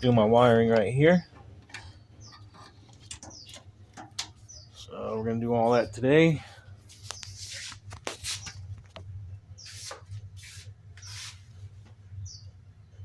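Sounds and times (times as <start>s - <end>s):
low steady hum: 0.0s - 13.0s
bird chirp: 0.7s - 5.3s, 12.2s - 13.0s.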